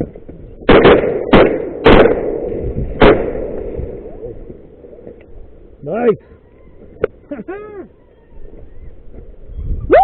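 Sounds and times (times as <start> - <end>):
shotgun shots with echo: 0.7 - 4.0.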